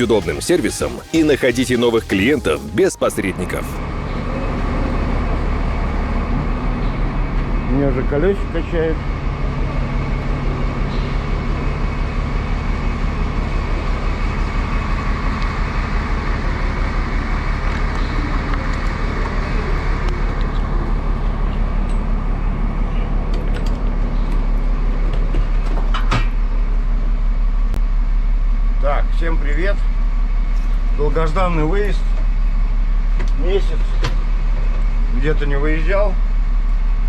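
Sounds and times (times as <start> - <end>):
air compressor pulsing: 3.8 - 27.7.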